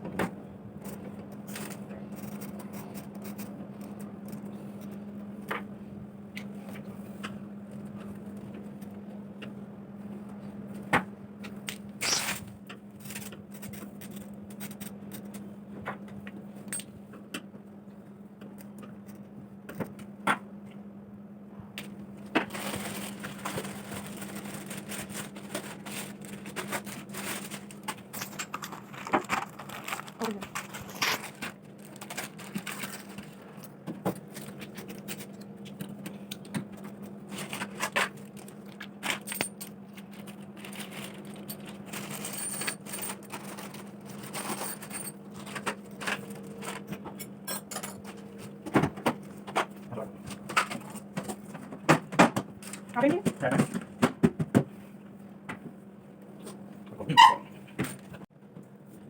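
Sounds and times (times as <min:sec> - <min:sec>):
steady low hum: 0:00.0 - 0:59.0
packaging scraping and crackling: 0:21.8 - 0:36.0, 0:36.8 - 0:47.0.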